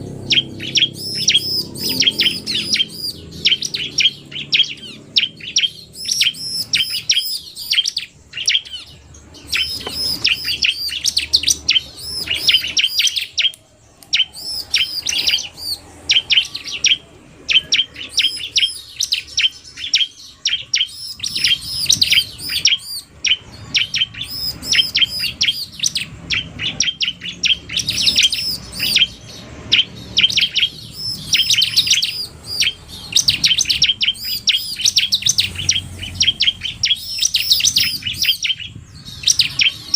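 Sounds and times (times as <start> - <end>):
bird song: 0.0 - 39.9
rapid high bird chirps: 0.0 - 39.9.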